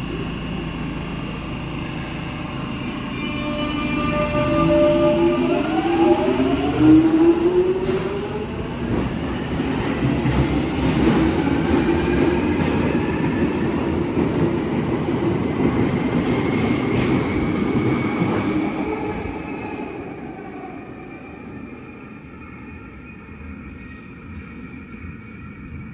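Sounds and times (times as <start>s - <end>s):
electric train motor whine: 0.0s - 9.3s.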